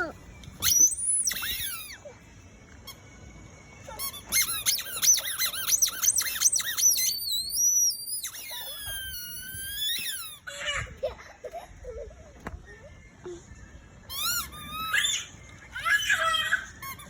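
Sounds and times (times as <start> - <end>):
squeaking toy ball: 0.0 - 2.1, 3.9 - 10.5, 14.1 - 17.0.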